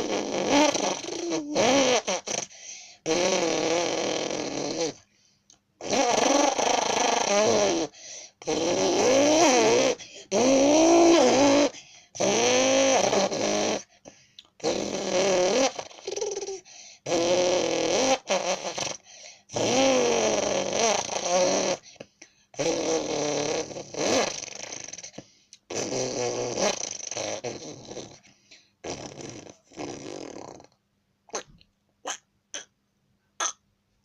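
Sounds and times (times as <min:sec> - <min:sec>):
person imitating engine revving: 0:00.0 - 0:05.0, 0:05.8 - 0:13.9, 0:14.6 - 0:21.8.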